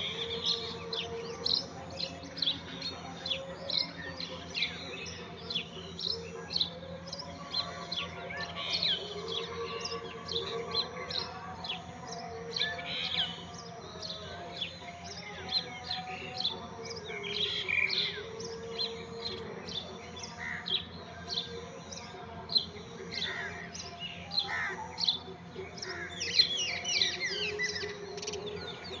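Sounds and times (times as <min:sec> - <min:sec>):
sparrows chirping: 0:00.0 - 0:29.0.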